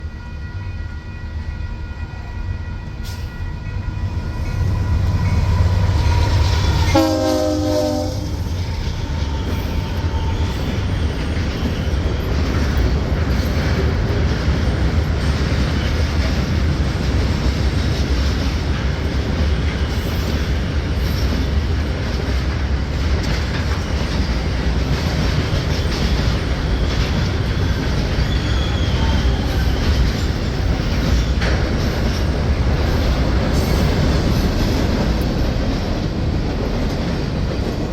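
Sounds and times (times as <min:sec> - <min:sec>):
train engine rumble: 0:00.0 - 0:37.9
locomotive air horn blast: 0:05.4 - 0:08.4.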